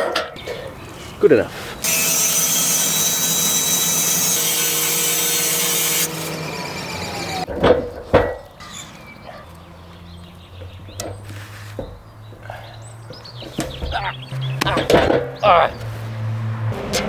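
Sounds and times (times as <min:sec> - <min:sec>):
power tool spinning down: 0:01.8 - 0:07.5
wooden knocks: 0:07.5 - 0:08.6, 0:10.6 - 0:15.9.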